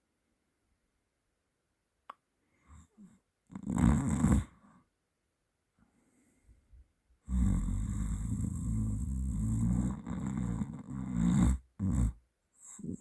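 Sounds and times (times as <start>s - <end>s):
person snoring: 2.8s - 4.6s, 7.3s - 13.0s.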